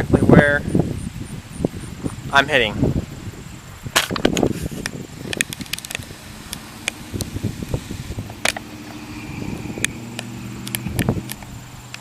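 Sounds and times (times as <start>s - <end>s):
sharp clicks: 4.0s - 9.0s, 9.8s - 12.0s.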